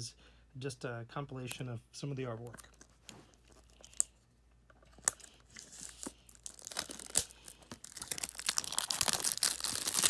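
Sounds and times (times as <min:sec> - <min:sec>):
plastic wrapping tearing and crinkling: 0:05.0 - 0:10.0.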